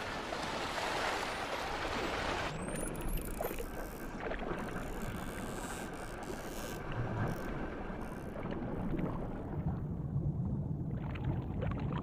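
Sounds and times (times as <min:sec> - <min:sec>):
low underwater rumble: 0:08.3 - 0:12.0.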